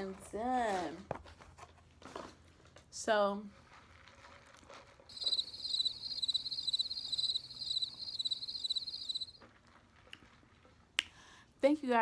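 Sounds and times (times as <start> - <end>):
cricket chirping: 5.1 - 9.4.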